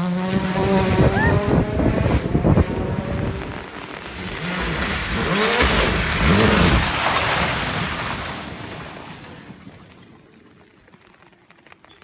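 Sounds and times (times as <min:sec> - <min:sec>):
rally car engine revving: 0:00.0 - 0:08.7.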